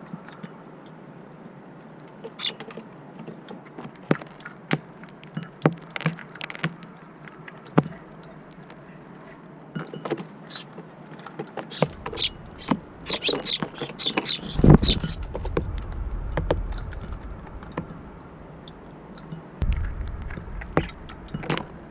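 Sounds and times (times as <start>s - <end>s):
birds pecking at feeder: 2.0s - 21.9s
high bird chirps: 11.7s - 15.3s.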